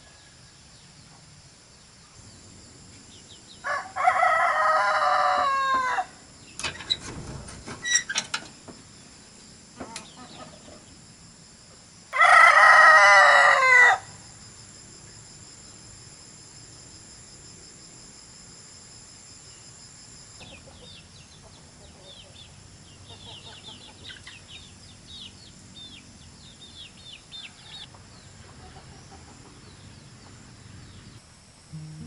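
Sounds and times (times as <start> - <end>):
faint high hum: 0.0 - 32.0
rooster crowing: 3.6 - 6.2, 12.2 - 14.2, 27.4 - 27.9.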